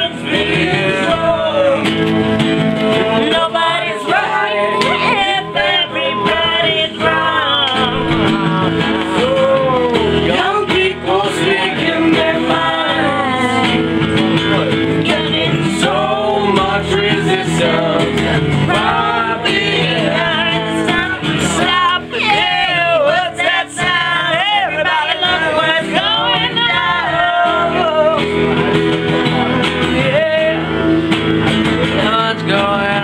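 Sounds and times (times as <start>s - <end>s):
man singing: 0.0s - 31.1s, 31.7s - 33.0s
guitar: 0.0s - 33.0s.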